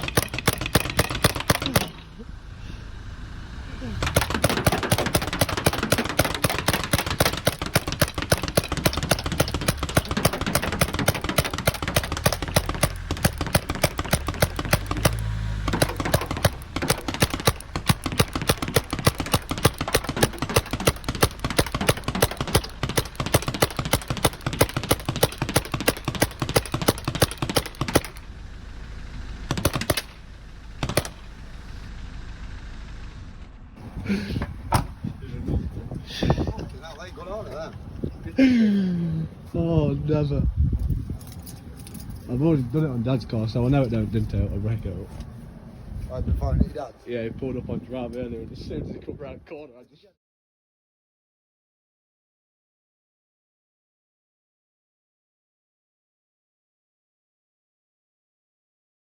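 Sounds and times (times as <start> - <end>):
paintball gun firing: 0.0 - 2.2, 3.8 - 28.3, 29.5 - 31.4.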